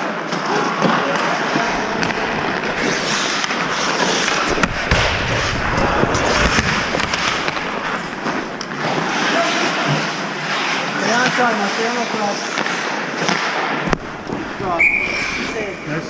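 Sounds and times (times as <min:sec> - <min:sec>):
sticks and puck clacking: 0:00.3 - 0:16.0
skate blades scraping ice: 0:01.5 - 0:16.0
heavy knocks: 0:01.7 - 0:09.1.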